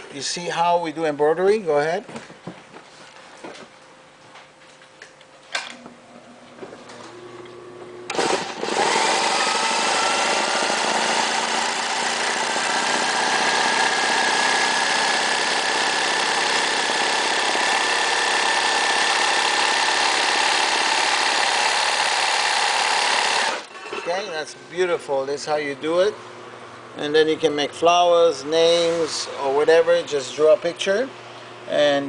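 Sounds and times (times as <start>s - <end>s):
sewing machine running: 8.1s - 23.7s.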